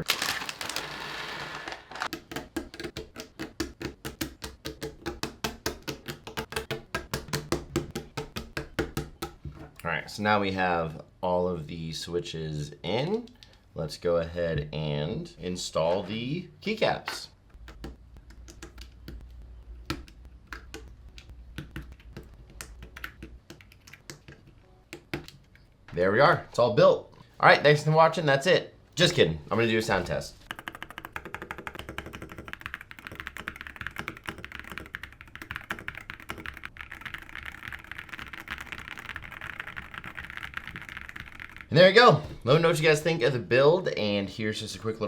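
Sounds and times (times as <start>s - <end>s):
mechanical keyboard clicks: 30.5s - 41.7s.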